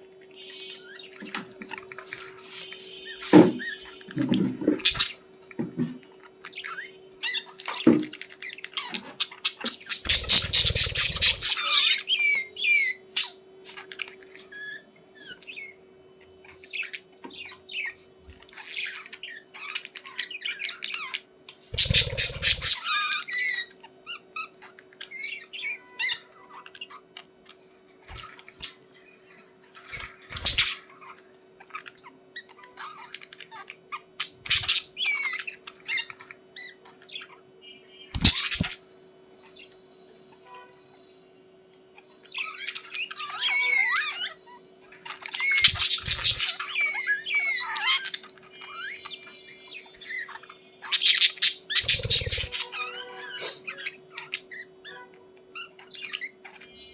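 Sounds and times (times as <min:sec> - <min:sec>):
budgerigars chattering and squawking: 0:00.4 - 0:15.8, 0:16.4 - 0:38.8, 0:42.0 - 0:56.9.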